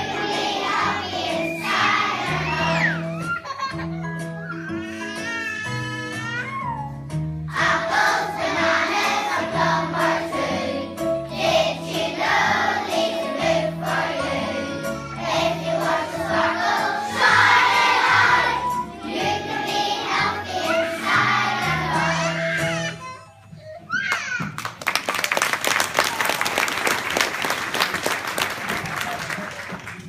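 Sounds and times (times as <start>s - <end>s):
children singing together: 0.0s - 3.1s, 7.5s - 22.8s
instrumental accompaniment with bass: 2.6s - 12.7s, 13.3s - 23.1s.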